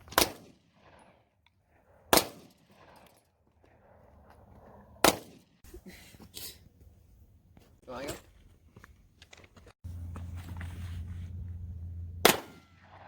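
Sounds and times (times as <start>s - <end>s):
gunshots: 0.1s - 1.2s, 2.1s - 3.0s, 5.0s - 5.6s, 12.2s - 13.0s.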